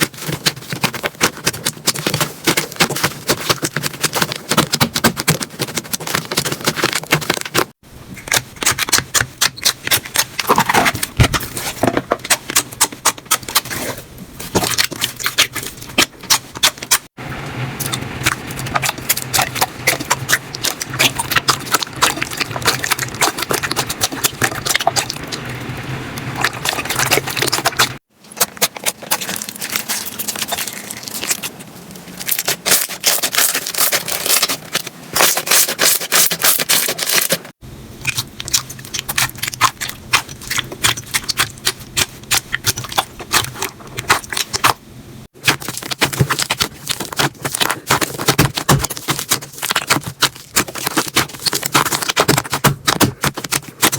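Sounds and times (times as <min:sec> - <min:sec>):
slime crackling and popping: 0:14.5 - 0:53.9.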